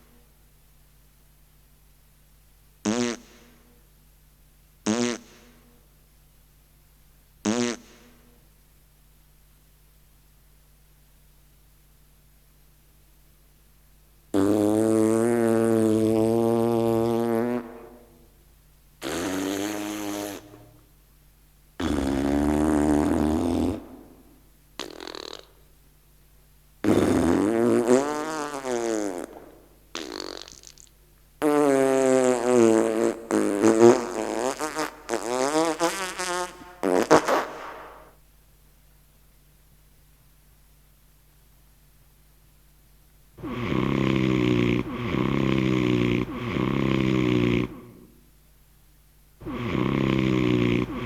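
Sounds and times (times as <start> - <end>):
fart sound effects: 2.8 - 3.6, 4.8 - 5.6, 7.4 - 8.2, 14.3 - 18.2, 19.0 - 20.8, 21.8 - 25.7, 26.8 - 38.2, 43.4 - 48.1, 49.4 - 51.0.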